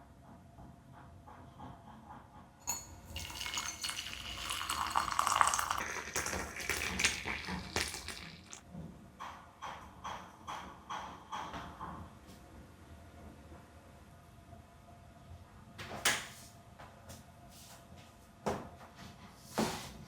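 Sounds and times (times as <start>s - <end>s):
water pouring: 2.7s - 8.6s.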